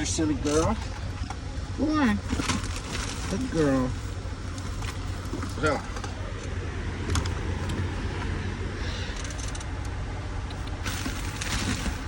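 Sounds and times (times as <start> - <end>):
low idling rumble: 0.0 - 12.0
scraping and rustling: 2.2 - 6.3, 10.6 - 12.0.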